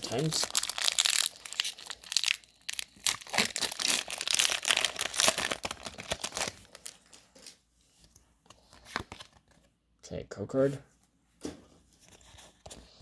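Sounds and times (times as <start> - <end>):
foil wrapper crinkling and tearing: 0.0 - 7.2.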